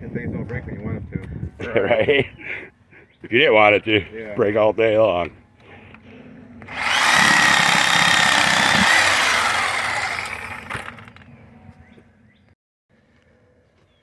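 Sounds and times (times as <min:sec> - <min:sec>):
power saw cutting wood: 0:06.7 - 0:11.1.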